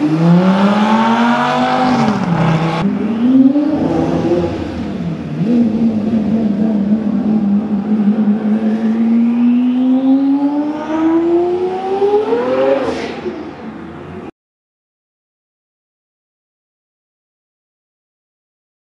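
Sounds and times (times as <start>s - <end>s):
car engine accelerating hard: 0.0s - 13.9s.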